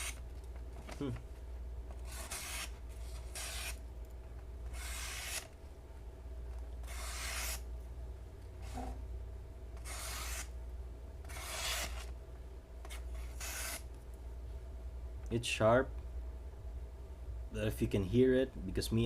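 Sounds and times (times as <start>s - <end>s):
knife blade slicing paper: 2.0s - 3.8s, 6.8s - 7.6s, 9.8s - 10.5s, 11.3s - 12.1s, 12.9s - 13.8s.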